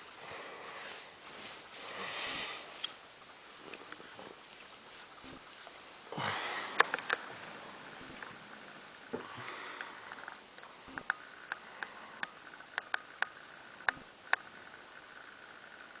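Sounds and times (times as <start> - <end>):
man breathing through nose: 0.1 - 2.8, 6.1 - 8.2
short sharp irregular clicks: 9.8 - 14.5.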